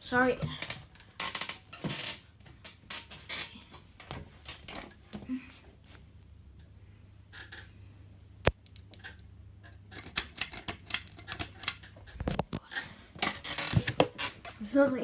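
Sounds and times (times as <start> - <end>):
pull-chain clicking and rattling: 7.3 - 7.7, 8.9 - 14.5.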